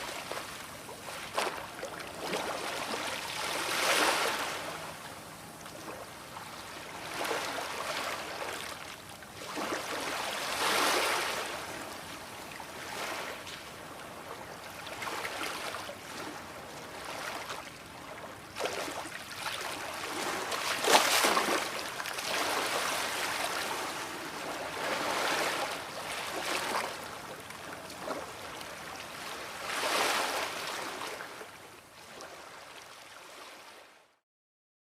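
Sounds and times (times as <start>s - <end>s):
sea waves washing onto shore: 0.0s - 5.8s, 18.5s - 31.3s.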